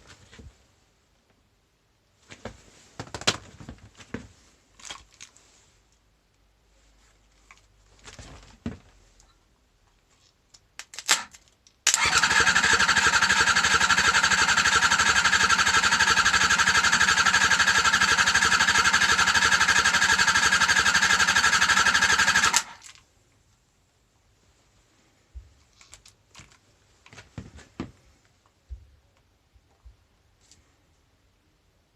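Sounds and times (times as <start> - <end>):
motorcycle engine cranking: 12.0 - 22.9.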